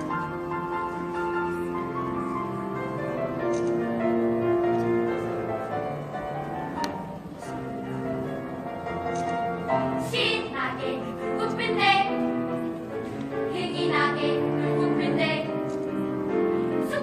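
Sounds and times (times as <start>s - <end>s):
children singing: 10.0s - 12.4s, 13.5s - 15.6s, 16.8s - 17.0s.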